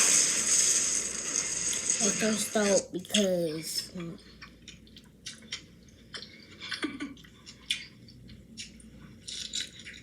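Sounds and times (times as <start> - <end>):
person chewing food: 4.3 - 10.0.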